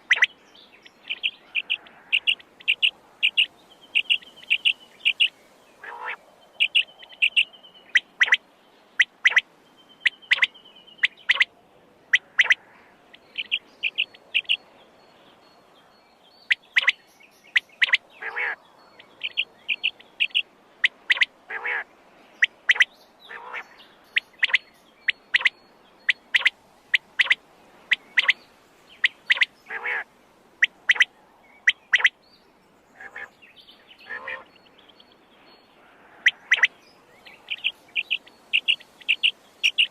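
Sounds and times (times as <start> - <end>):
quail calling: 0.0 - 0.3, 1.0 - 8.4, 9.0 - 9.4, 10.0 - 11.5, 12.1 - 14.6, 16.5 - 18.6, 19.2 - 21.8, 22.4 - 28.4, 29.0 - 32.2, 33.0 - 33.3, 34.0 - 34.5, 35.8 - 36.8, 37.4 - 39.9.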